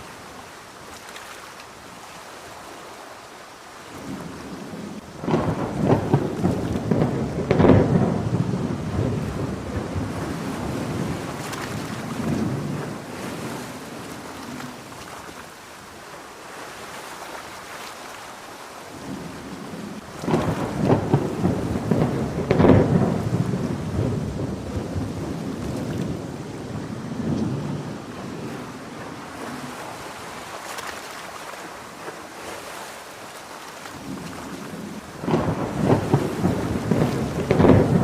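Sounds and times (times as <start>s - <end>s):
steady rain: 0.0s - 38.0s
rolling thunder: 4.1s - 13.8s, 19.0s - 30.2s, 34.0s - 38.0s.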